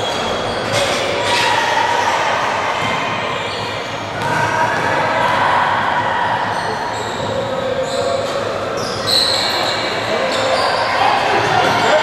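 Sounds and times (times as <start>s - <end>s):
din of players and spectators: 0.0s - 12.0s
basketball bouncing on court: 4.1s - 5.0s.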